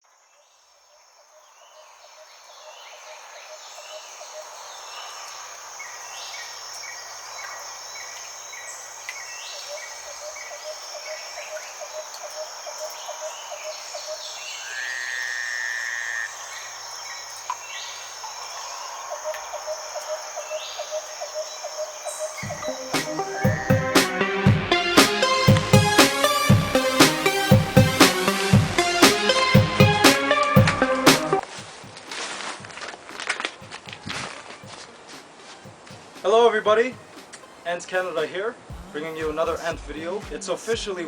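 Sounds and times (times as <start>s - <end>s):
pulsing frog chorus: 9.5s - 30.0s
high-pitched insect drone: 10.8s - 23.9s.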